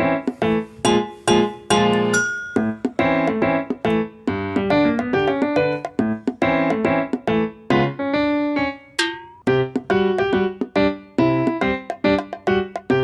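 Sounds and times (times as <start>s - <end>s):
bright quick piano melody: 0.0s - 13.0s.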